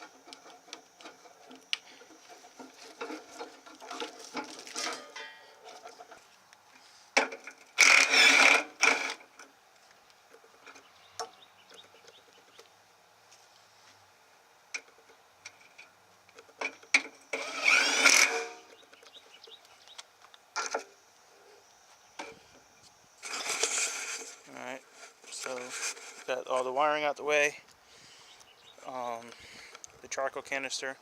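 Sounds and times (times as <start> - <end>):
clatter of parts handled: 0.0 - 6.3
plastic loom scraping and rustling: 0.0 - 6.3, 23.2 - 26.6.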